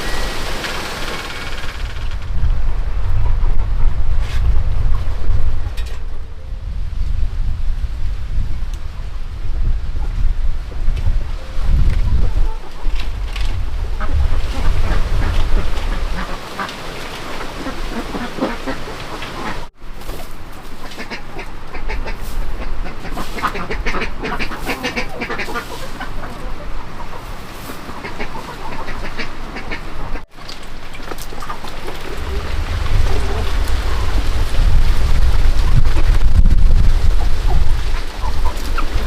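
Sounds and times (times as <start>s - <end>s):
wind rumble on microphone: 1.3s - 19.8s, 31.5s - 39.0s
ducks quacking: 13.9s - 19.7s, 20.5s - 30.3s, 37.2s - 39.0s.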